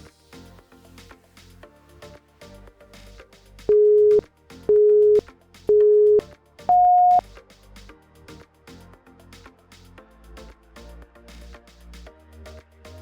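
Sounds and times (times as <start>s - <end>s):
electronic music with steady beat: 3.5s - 7.3s
timer beeps: 3.7s - 7.2s.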